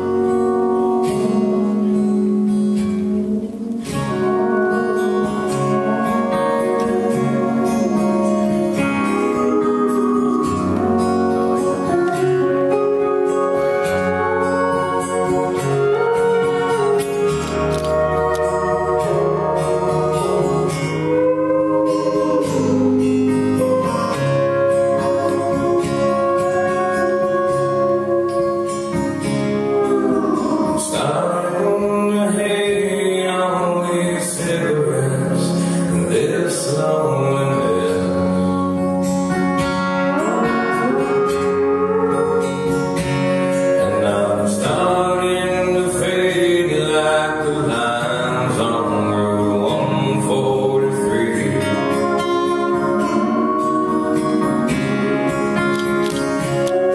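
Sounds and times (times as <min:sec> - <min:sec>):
guitar accompaniment: 0:00.0 - 0:56.9
sliding steel guitar notes: 0:00.0 - 0:56.9
man singing: 0:29.8 - 0:38.8, 0:43.7 - 0:55.1.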